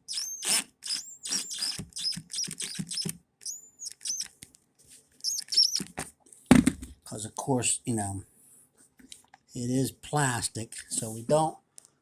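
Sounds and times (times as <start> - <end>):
screw squeaking into plastic: 0.0 - 4.4, 5.2 - 6.0.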